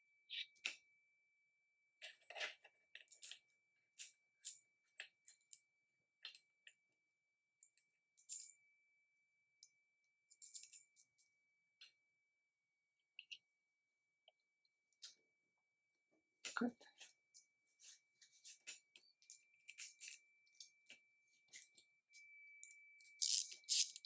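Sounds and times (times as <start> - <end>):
faint high-pitched tone: 19.0 - 24.0
metal parts clinking: 19.7 - 20.2, 23.1 - 24.0.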